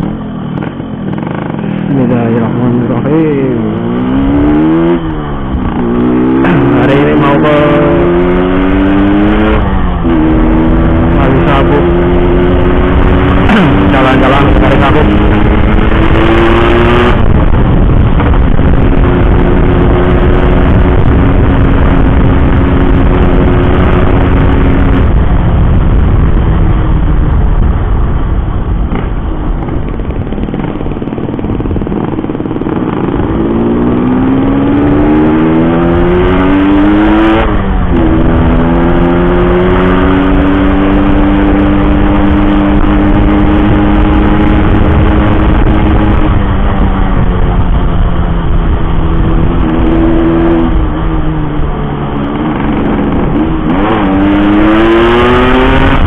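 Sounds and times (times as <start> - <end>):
motorcycle two-stroke engine running: 0.0 - 4.4, 28.9 - 34.0.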